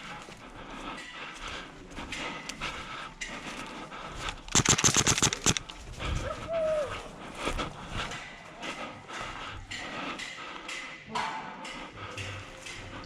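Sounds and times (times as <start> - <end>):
airsoft gun full-auto burst: 4.5 - 5.7
clicks: 4.5 - 5.8.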